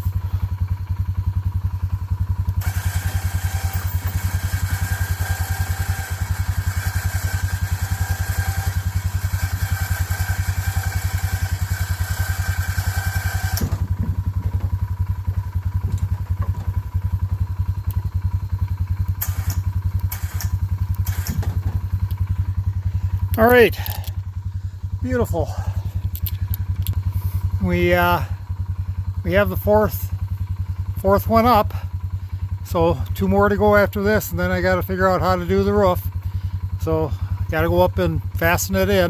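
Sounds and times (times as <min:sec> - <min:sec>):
engine idling: 0:00.0 - 0:39.0
electric winch whining: 0:02.6 - 0:18.0, 0:19.2 - 0:21.9
knocks: 0:13.6 - 0:14.9.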